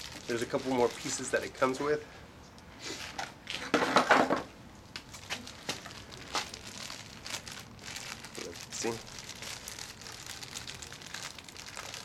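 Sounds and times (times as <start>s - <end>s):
packaging crinkling and rustling: 0.0s - 1.5s, 5.0s - 12.0s.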